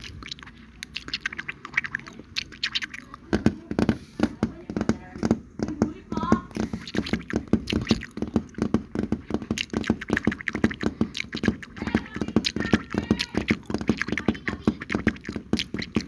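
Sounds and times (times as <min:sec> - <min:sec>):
wet mouth clicks and pops: 0:00.0 - 0:16.0.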